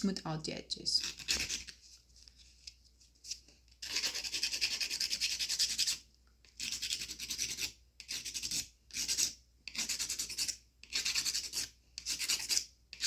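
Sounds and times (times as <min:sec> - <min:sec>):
file rubbing on toenail: 0:01.0 - 0:01.8, 0:03.8 - 0:06.0, 0:06.6 - 0:13.0.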